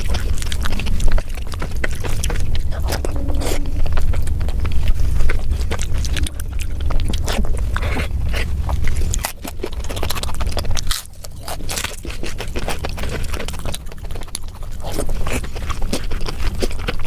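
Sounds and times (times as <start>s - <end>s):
person chewing with mouth clicks: 0.0s - 3.7s, 5.8s - 17.0s
low rumble: 0.4s - 11.8s.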